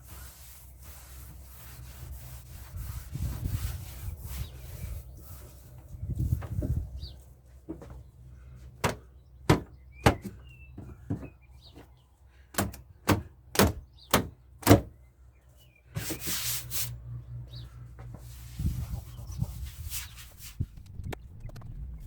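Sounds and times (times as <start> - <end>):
hammer tapping metal panel: 8.8 - 10.4, 12.6 - 14.9
rough hissy scraping: 16.0 - 17.0.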